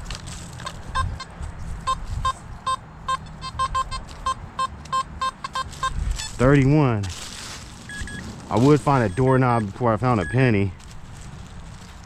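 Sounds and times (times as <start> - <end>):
metal detector beeps: 0.6 - 6.5, 7.9 - 10.8.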